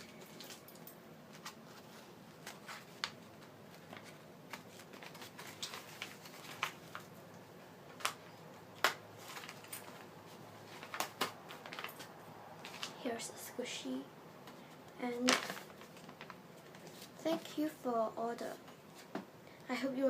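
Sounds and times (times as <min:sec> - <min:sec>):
paper rustling and crinkling: 0:01.3 - 0:07.2, 0:07.9 - 0:13.3, 0:14.5 - 0:17.6.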